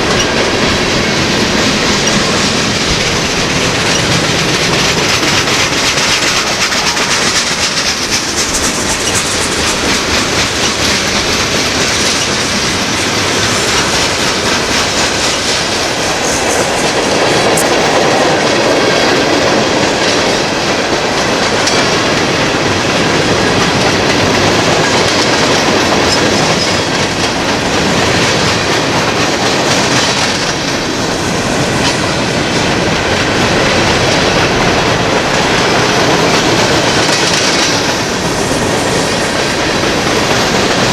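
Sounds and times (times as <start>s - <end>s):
freight train cars rolling past: 0.0s - 40.9s
wheels clicking over rail joints: 0.0s - 40.9s.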